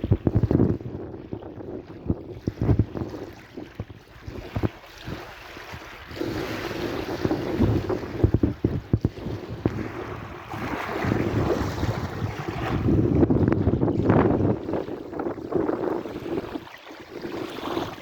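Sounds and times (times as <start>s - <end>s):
wind buffeting microphone: 0.0s - 18.0s
sea waves washing in: 4.2s - 18.0s.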